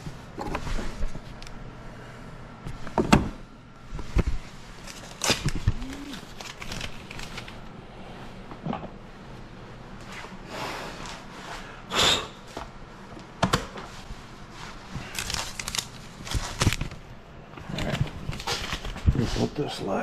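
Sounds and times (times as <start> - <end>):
objects rustling: 3.9 - 8.9.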